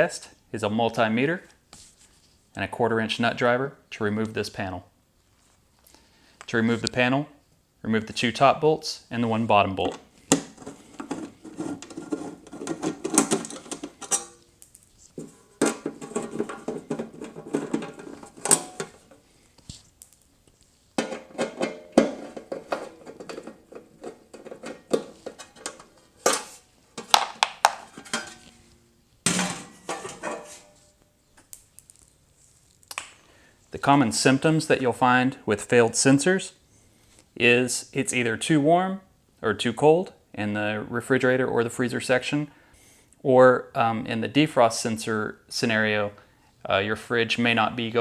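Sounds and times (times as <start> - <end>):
metallic clicking and clattering: 11.8 - 14.5.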